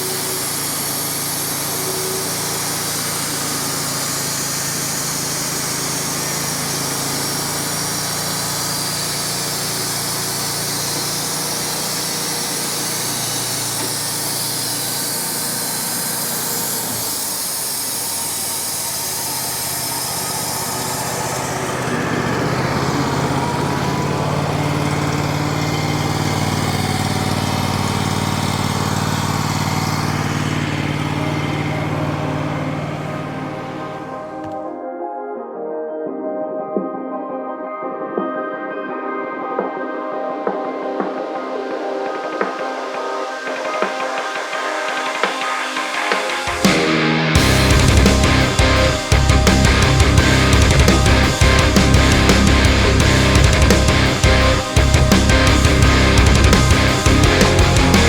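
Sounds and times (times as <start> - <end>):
saw blade hissing through log: 0.0 - 34.6
sawmill engine running: 0.0 - 34.6, 42.4 - 58.0.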